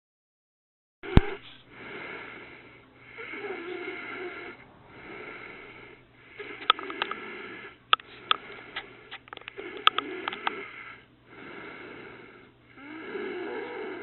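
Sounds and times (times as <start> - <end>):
woman snoring: 1.1 - 8.3, 9.5 - 14.0
sharp mouth clicks: 6.6 - 7.2, 7.9 - 10.6.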